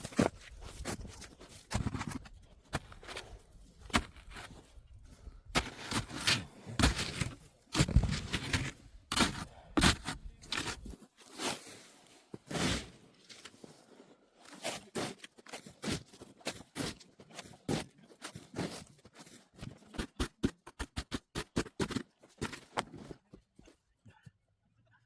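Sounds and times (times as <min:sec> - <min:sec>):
packed snow crunching and scraping: 0:00.0 - 0:20.4.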